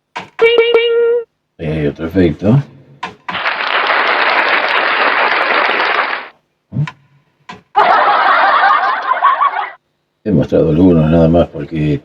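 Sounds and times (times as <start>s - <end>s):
canned applause: 3.4s - 6.4s
canned laughter: 7.8s - 9.8s.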